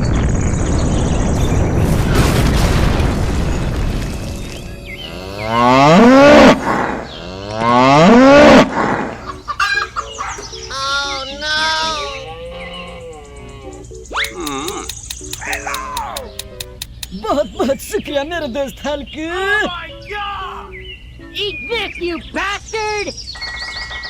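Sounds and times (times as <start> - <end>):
dense rushing noise: 0.0 - 7.2
cow mooing: 5.0 - 8.7
short wavering calls: 9.2 - 24.0.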